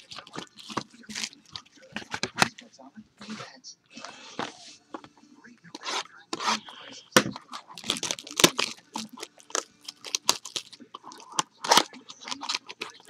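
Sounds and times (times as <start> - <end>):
card wrappers crinkling and tearing: 0.0 - 2.7, 5.8 - 13.0.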